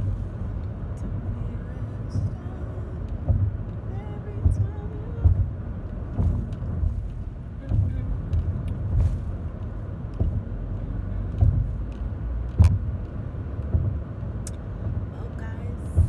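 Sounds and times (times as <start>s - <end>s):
car cabin rumble: 0.0s - 16.0s
low thump: 3.2s - 3.7s, 4.4s - 10.6s, 11.3s - 13.0s, 13.7s - 14.0s.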